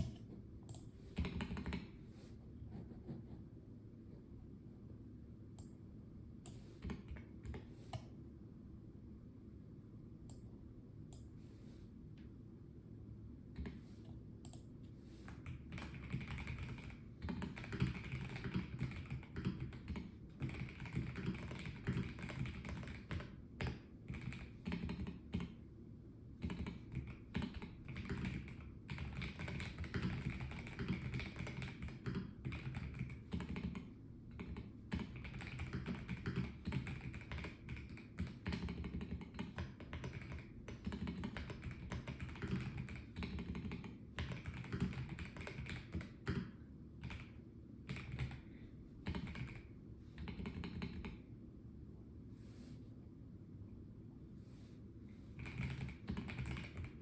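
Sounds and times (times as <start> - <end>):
typing on mechanical keyboard: 1.2 - 1.9, 15.3 - 25.6, 26.4 - 48.4, 49.0 - 51.2, 55.4 - 57.0.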